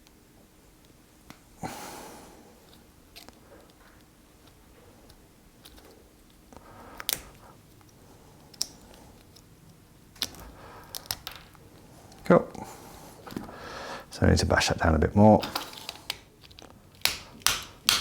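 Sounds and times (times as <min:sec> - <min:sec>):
small metal parts clicking: 0:10.2 - 0:11.6.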